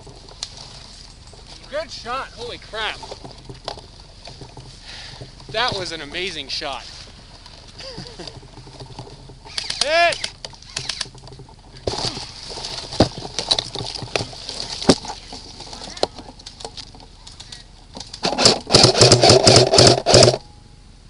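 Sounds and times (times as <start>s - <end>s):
airsoft gun clicks: 9.5s - 11.1s.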